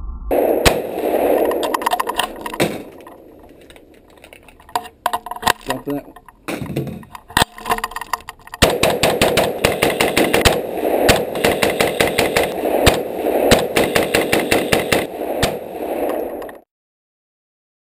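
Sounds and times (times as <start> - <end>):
rifle firing rapidly: 8.6 - 15.8.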